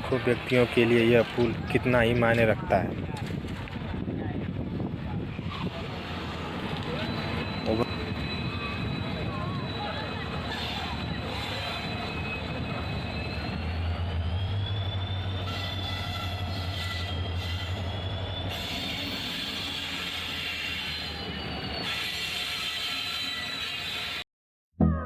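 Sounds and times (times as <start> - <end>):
train rumbling on rails: 0.0 - 24.2
wheels squealing on track: 5.3 - 24.2.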